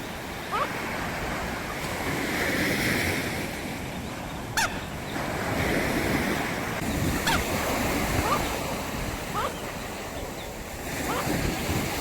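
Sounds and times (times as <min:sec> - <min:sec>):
sea waves washing onto beach: 0:00.0 - 0:12.0.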